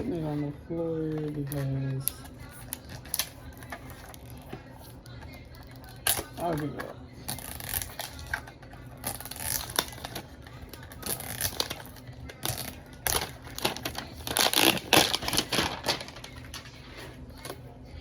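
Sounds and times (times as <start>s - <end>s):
plastic packaging crinkling: 7.3s - 17.6s.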